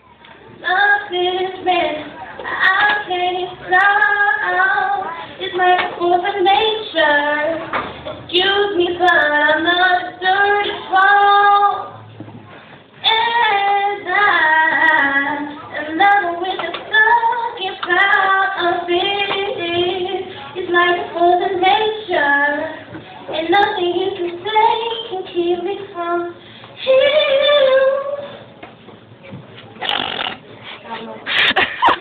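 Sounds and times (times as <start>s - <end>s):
woman singing unaccompanied: 0.6s - 12.0s, 13.0s - 28.3s
singer breathing: 26.4s - 26.8s.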